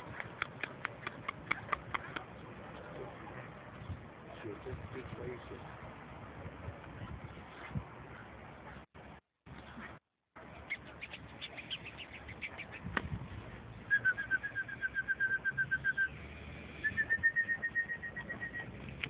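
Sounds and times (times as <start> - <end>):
songbird singing: 10.4 - 19.0.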